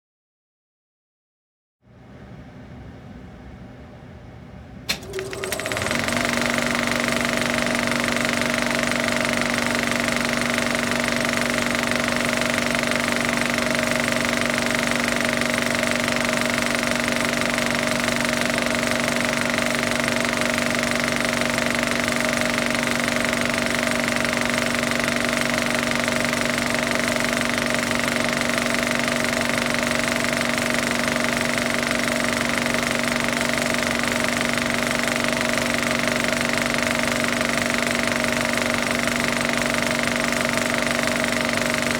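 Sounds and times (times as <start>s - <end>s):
steady hum: 1.9s - 21.2s
film projector clatter: 4.9s - 41.9s.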